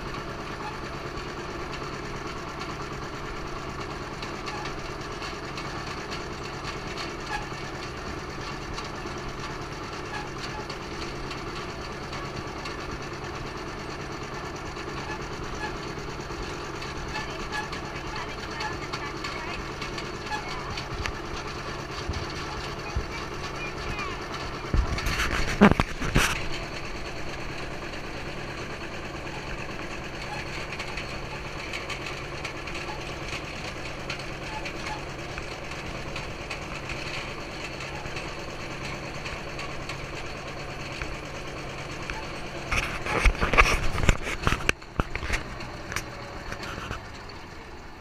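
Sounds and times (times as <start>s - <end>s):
tractor engine running: 0.0s - 48.0s.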